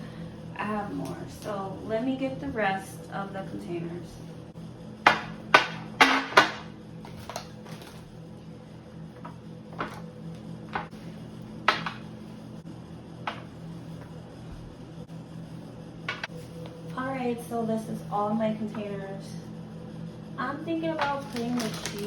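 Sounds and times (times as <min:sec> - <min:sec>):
steady low hum: 0:00.0 - 0:22.0
plastic containers clattering: 0:21.0 - 0:22.0.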